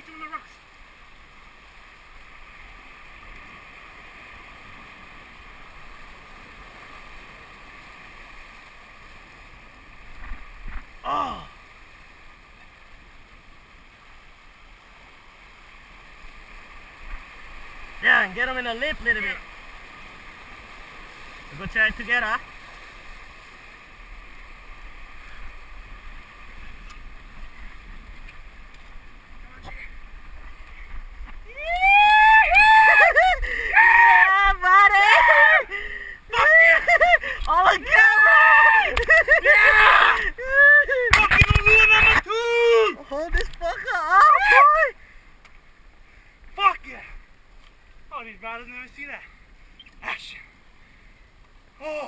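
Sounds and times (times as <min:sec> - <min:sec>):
ocean surf on rocky shore: 0:00.0 - 0:52.0
wind noise: 0:35.7 - 0:42.4
faint clicks: 0:45.4 - 0:45.7, 0:47.6 - 0:48.0.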